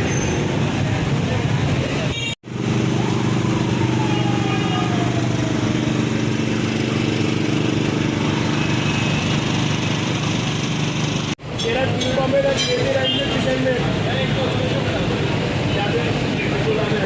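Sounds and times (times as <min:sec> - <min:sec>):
street noise: 0:00.0 - 0:17.0
small engine running: 0:02.5 - 0:11.4.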